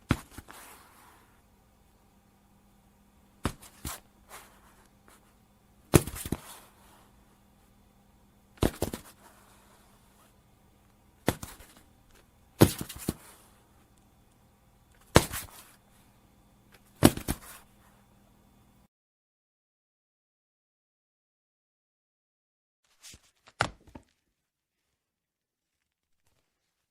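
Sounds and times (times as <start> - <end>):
knocks and scuffs: 3.4 - 5.2, 11.2 - 13.4
body falling heavy impact: 12.6 - 13.3.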